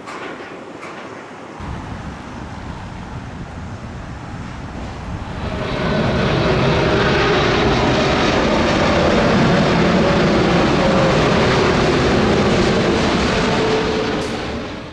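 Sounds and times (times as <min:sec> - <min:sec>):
airplane flying over: 0:00.0 - 0:14.9.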